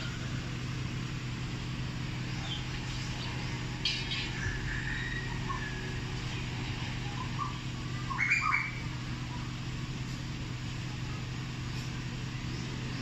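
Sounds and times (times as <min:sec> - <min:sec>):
steady low hum: 0:00.0 - 0:13.0
birds chirping and calling: 0:02.1 - 0:09.4.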